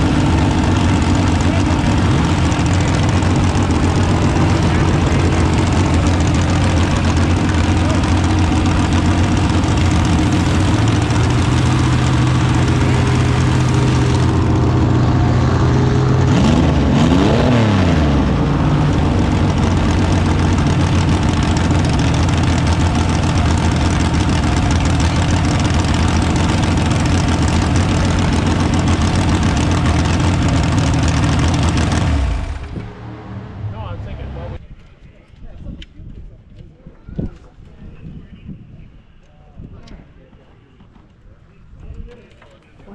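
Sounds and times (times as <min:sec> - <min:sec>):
engine revving: 0:00.0 - 0:34.6
engine idling: 0:00.0 - 0:34.7.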